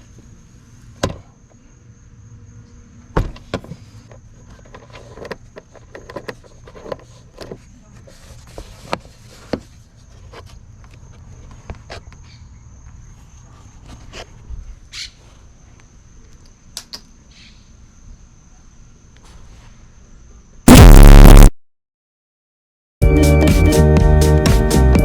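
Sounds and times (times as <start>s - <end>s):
steady low hum: 20.7s - 21.5s.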